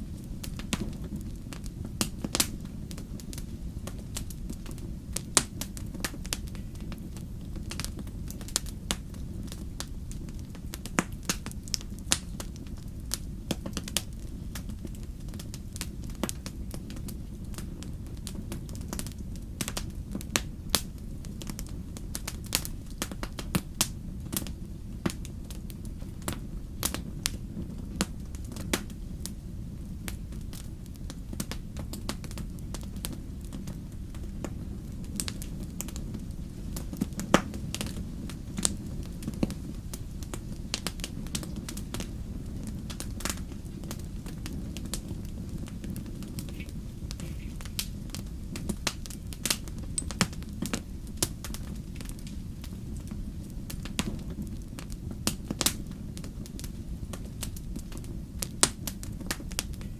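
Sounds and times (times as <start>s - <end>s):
campfire crackling and popping: 0.0s - 59.9s.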